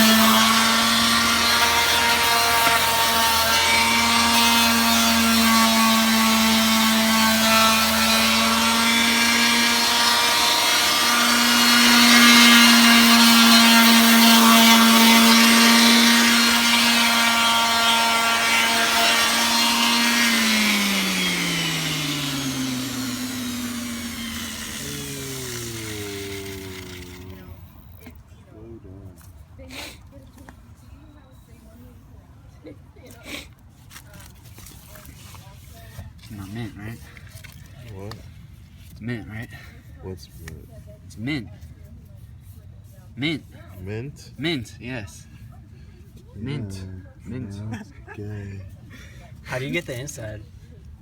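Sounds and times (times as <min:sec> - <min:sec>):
electric power tool motor: 0:00.0 - 0:28.0
power tool winding down: 0:00.0 - 0:28.0.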